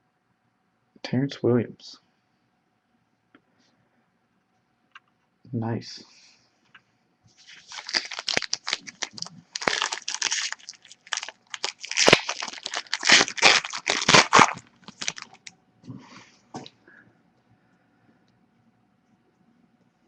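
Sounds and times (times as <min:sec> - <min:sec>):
foil wrapper tearing and crinkling: 0:07.4 - 0:15.5.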